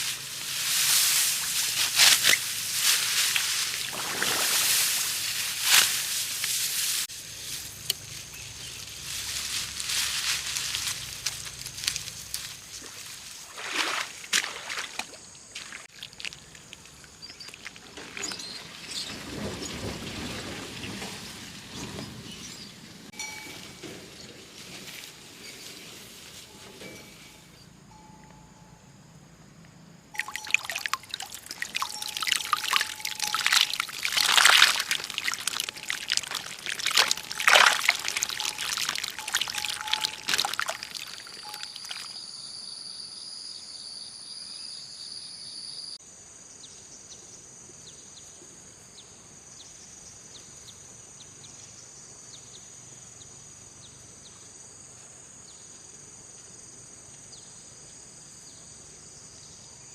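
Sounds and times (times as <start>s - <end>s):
water splashing and pouring: 0.0s - 7.1s, 12.8s - 16.4s, 30.2s - 42.2s
insects droning: 0.0s - 59.9s.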